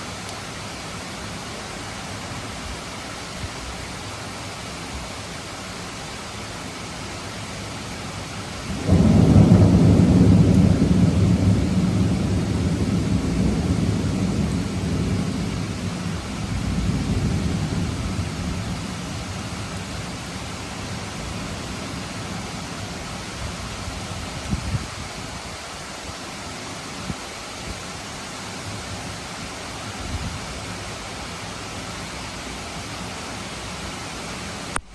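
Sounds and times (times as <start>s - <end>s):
steady rain falling: 0.0s - 34.9s
deep rumble of thunder: 8.7s - 22.6s.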